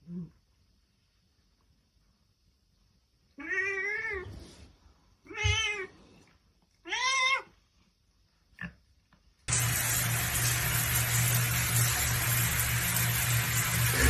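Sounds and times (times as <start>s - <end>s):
cat meowing: 3.4s - 4.3s, 6.8s - 7.5s
loud steady hissing with low hum: 9.5s - 14.0s.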